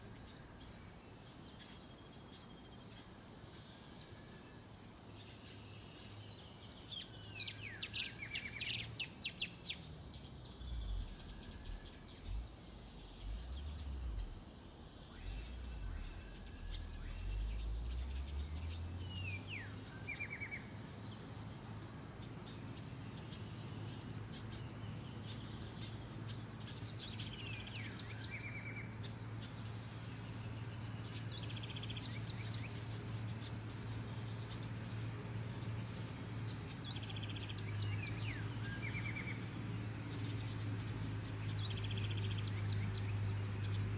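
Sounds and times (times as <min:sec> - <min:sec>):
steady low hum: 0:00.0 - 0:43.9
birds whistling and trilling: 0:01.2 - 0:43.9
low rumble: 0:09.6 - 0:20.0.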